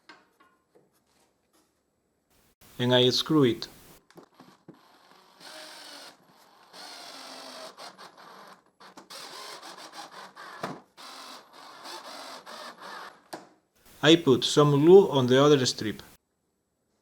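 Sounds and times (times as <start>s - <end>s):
power drill driving screws: 4.7s - 13.3s.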